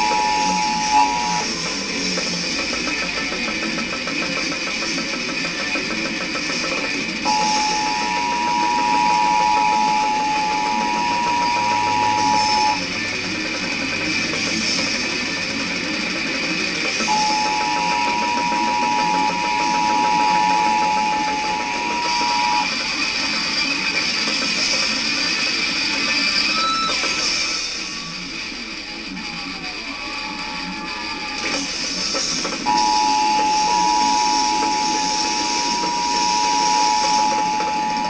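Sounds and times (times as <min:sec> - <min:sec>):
two-tone alert signal: 0:00.0 - 0:01.5, 0:07.3 - 0:12.8, 0:17.1 - 0:22.8, 0:32.7 - 0:38.0.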